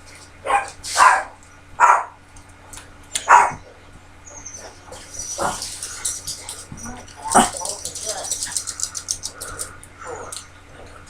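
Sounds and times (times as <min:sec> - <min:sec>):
dog barking: 0:00.4 - 0:02.2, 0:03.2 - 0:03.7.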